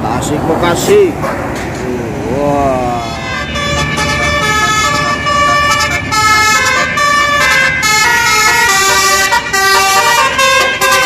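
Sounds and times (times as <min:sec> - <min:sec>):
bus engine rumble: 0:00.0 - 0:11.0
air horns playing a tune: 0:03.0 - 0:11.0.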